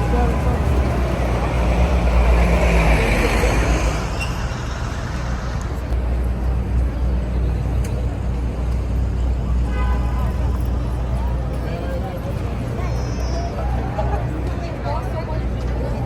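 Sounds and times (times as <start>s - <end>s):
vehicle passing by: 0.0s - 6.8s
city street traffic rumble: 0.0s - 16.0s.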